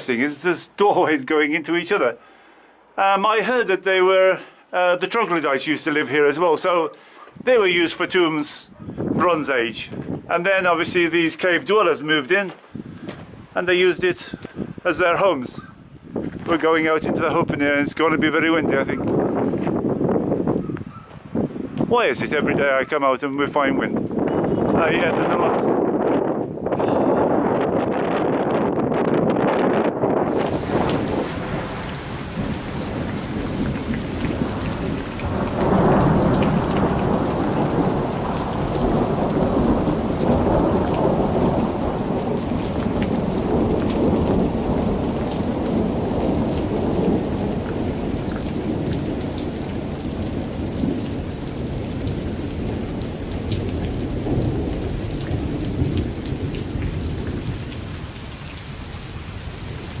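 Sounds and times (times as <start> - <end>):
heavy rain pattering: 2.9 - 20.5, 21.3 - 26.3, 27.3 - 60.0
deep rumble of thunder: 24.0 - 60.0.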